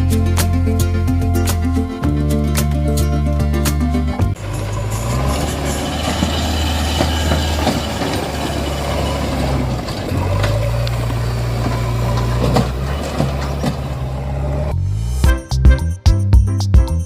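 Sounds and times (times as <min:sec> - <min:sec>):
low engine-like drone: 0:02.8 - 0:15.2.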